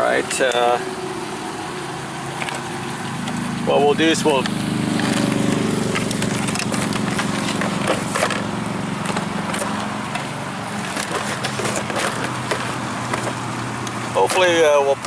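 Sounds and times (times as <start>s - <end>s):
low engine-like hum: 0.0s - 15.0s
clicks and knocks of handling: 4.4s - 14.5s.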